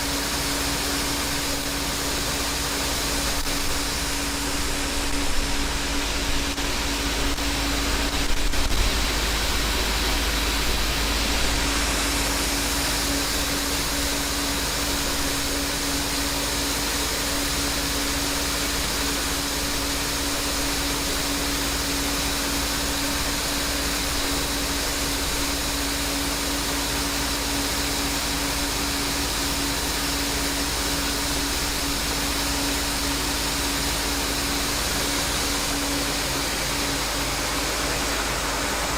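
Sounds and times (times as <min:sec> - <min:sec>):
farm machine engine running: 0:00.0 - 0:27.8
constant hum: 0:00.0 - 0:38.9
rush of noise: 0:33.9 - 0:38.9.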